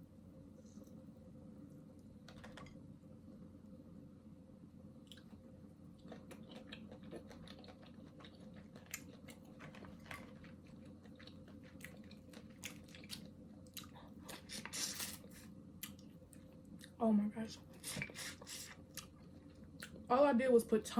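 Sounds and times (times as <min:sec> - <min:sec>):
faint steady hum: 0:00.0 - 0:20.9
chewing and biting food: 0:05.1 - 0:17.0.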